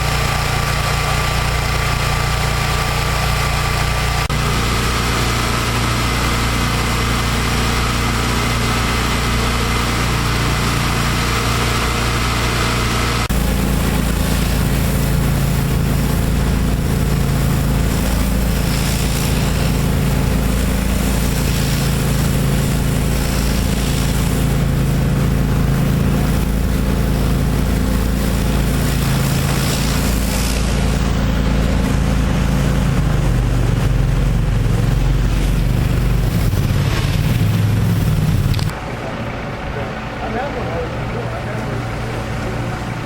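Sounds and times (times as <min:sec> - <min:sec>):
pressure washer engine running: 0:00.0 - 0:43.0.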